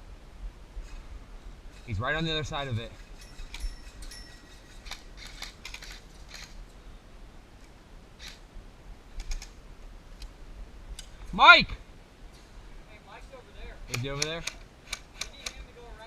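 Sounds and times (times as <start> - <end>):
airsoft gun clicks: 4.8 - 6.6, 9.1 - 9.6, 13.9 - 15.6.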